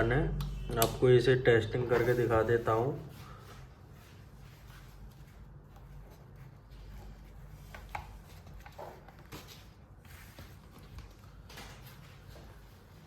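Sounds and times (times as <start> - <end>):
low steady hum: 0.0 - 13.0
plastic handling clicks and scrapes: 6.9 - 9.7.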